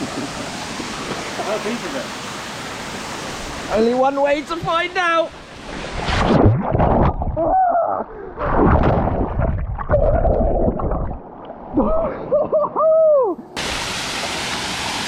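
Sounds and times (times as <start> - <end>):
waterfall rushing: 0.0 - 5.1, 13.6 - 15.0
water splashing and sloshing: 0.0 - 12.2, 13.6 - 15.0
person crying out at the cold: 7.4 - 8.1, 11.8 - 13.4.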